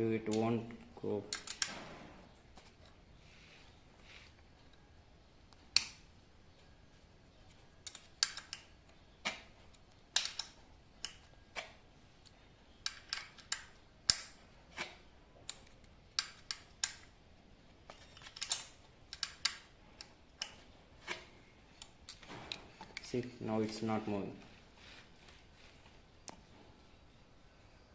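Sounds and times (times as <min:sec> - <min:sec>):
metallic clicks and taps: 0:00.3 - 0:01.8, 0:07.8 - 0:14.4, 0:17.9 - 0:20.6.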